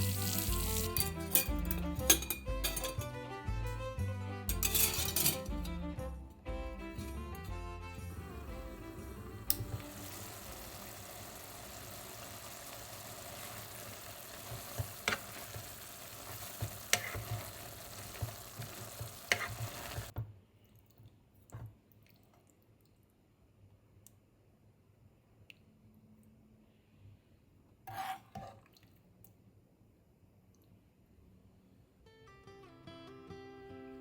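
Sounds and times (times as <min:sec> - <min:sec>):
food sizzling in a pan: 0:00.0 - 0:01.2, 0:08.3 - 0:20.2.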